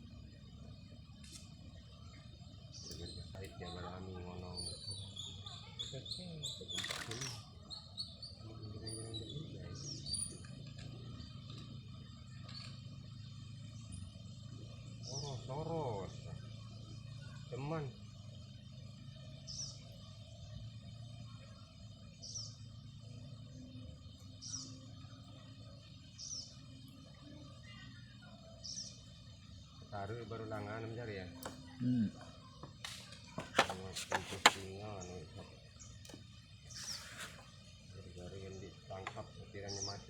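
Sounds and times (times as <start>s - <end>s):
small birds chirping: 0.0s - 40.0s
steady low hum: 0.0s - 40.0s
brief rustling: 32.9s - 34.7s
bird calling: 36.6s - 37.5s.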